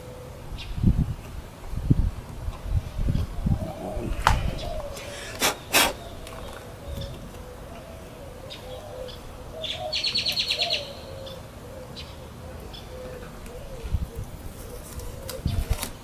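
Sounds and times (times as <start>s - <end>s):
dove cooing: 0.0s - 1.1s, 2.8s - 16.0s
high bird trill: 3.0s - 15.6s.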